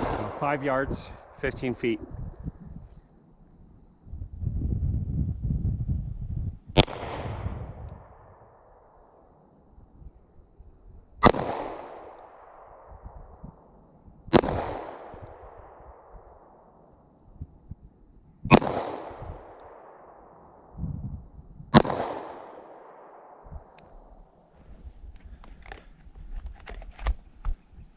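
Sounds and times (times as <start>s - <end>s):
pistol shots with echo: 0.0s - 1.9s, 6.8s - 7.5s, 11.2s - 12.8s, 14.3s - 16.2s, 18.5s - 20.2s, 21.7s - 23.4s.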